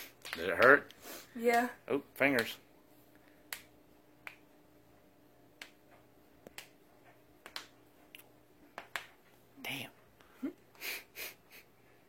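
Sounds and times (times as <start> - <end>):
knuckles cracking: 7.4 - 9.1.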